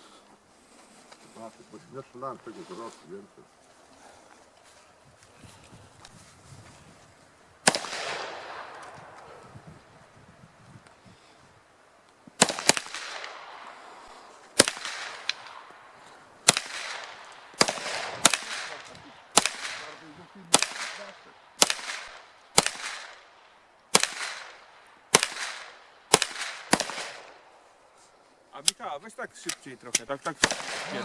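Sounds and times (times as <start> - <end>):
gunshots with echoing tail: 7.6 - 9.3, 12.4 - 13.8, 14.6 - 15.8, 16.4 - 27.5, 30.4 - 31.0.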